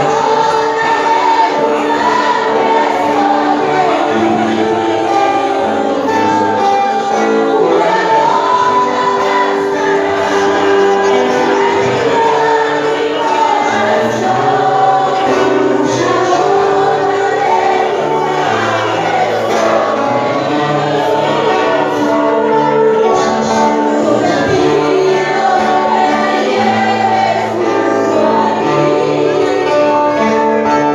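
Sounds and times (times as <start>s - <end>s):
group of voices singing: 0.0s - 30.9s
sustained accompaniment: 0.0s - 30.9s.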